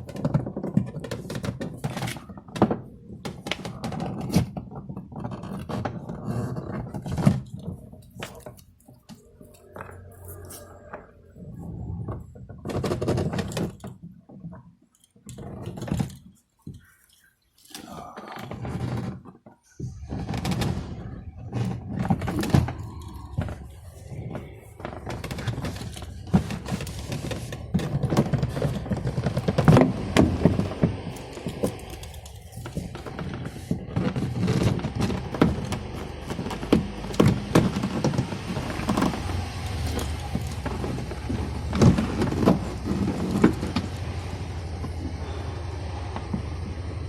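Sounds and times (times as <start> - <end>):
steady low hum: 19.9 - 47.0.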